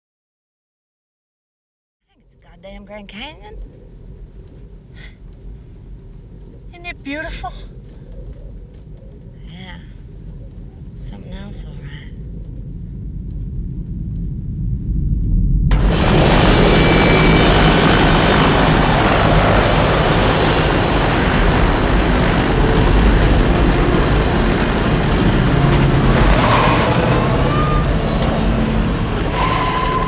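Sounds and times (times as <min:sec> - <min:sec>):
helicopter rotor and engine: 0:15.8 - 0:30.0.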